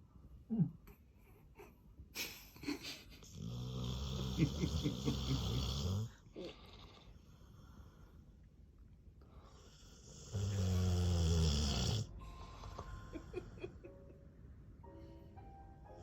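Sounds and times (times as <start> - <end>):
dog snoring: 3.3 - 7.9, 9.5 - 12.1.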